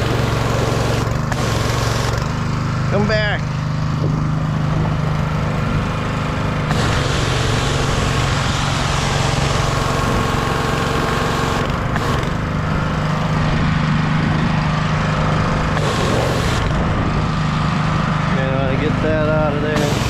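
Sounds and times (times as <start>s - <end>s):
pressure washer engine running: 0.0s - 20.0s
water spraying hiss: 19.8s - 20.0s.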